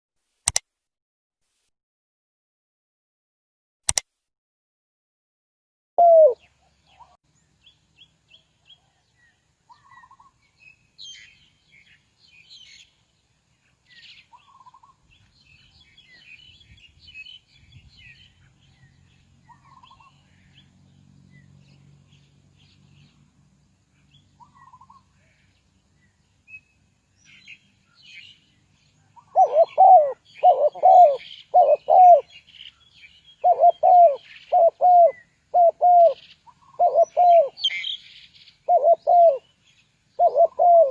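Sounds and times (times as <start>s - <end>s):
dove cooing loudly: 6.0s - 7.2s, 29.2s - 32.3s, 33.4s - 37.7s, 38.7s - 39.4s, 40.2s - 40.9s
small birds chirping: 6.2s - 40.9s.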